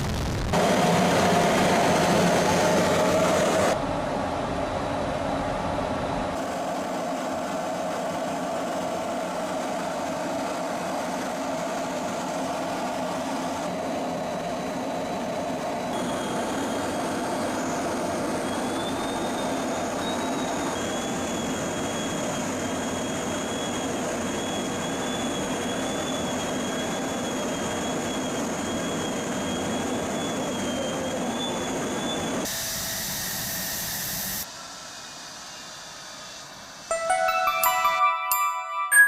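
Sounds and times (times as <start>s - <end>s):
high jet whine: 0.0s - 23.4s.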